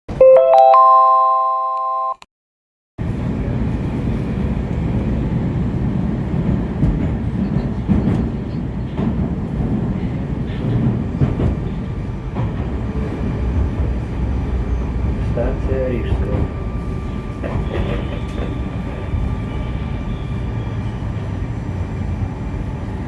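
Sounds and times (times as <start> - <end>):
jingle of held tones: 0.2 - 2.2
train rumbling: 3.0 - 23.0.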